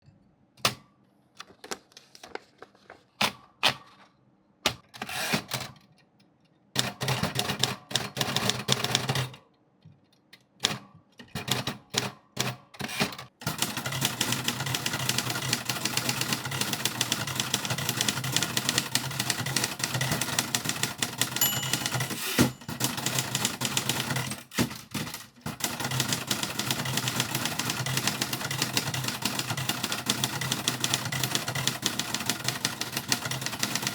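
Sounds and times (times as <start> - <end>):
manual typewriter typing: 10.6 - 33.9.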